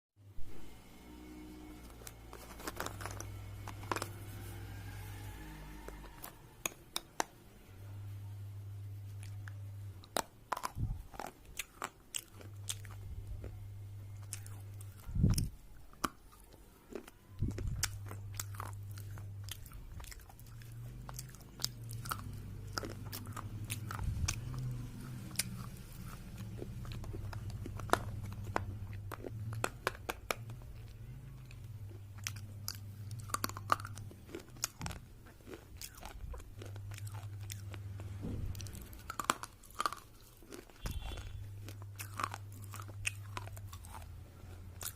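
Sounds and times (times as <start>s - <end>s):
low hum: 0.2s - 16.1s, 17.1s - 44.9s
crunching slate pencils: 1.7s - 7.4s
heavy low thumps: 38.1s - 39.0s.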